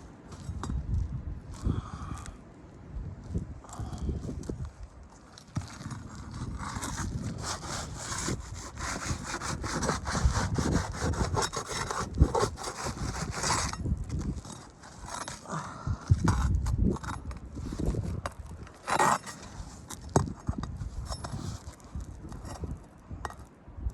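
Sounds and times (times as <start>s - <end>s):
pry bar scraping shingles: 5.2s - 23.5s.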